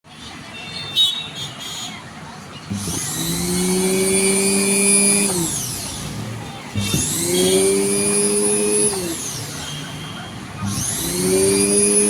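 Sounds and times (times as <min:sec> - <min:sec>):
sewing machine motor whining: 0:02.7 - 0:12.0.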